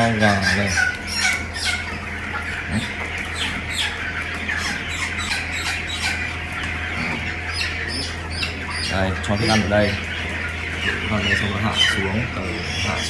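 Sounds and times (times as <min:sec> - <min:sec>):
chicks cheeping and squawking: 0:00.0 - 0:13.0
steady low hum: 0:00.0 - 0:13.0.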